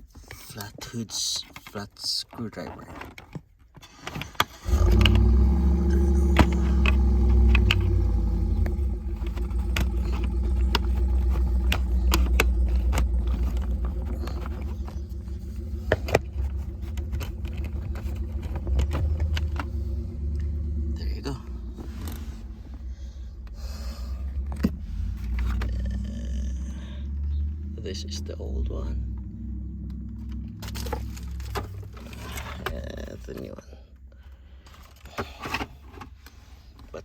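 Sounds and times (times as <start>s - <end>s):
engine rumble with hum: 3.8s - 37.0s
plastic clicks and rattles: 8.6s - 20.4s.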